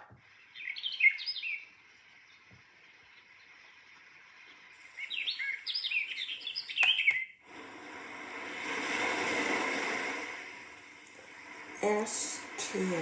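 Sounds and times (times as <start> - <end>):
recorded birdsong chirps: 0.0 - 7.4
steady rushing noise: 7.4 - 13.0.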